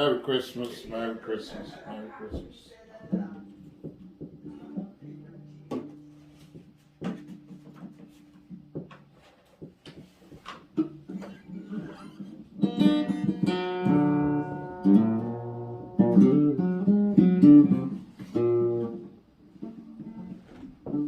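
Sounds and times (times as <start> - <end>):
acoustic guitar plucked notes: 3.0 - 21.0
acoustic guitar strummed chords: 10.0 - 21.0.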